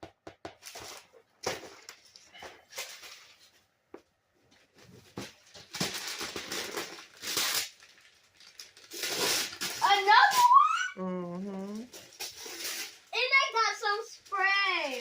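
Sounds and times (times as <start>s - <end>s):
wrapping paper rustling: 5.3s - 10.6s, 11.9s - 15.0s.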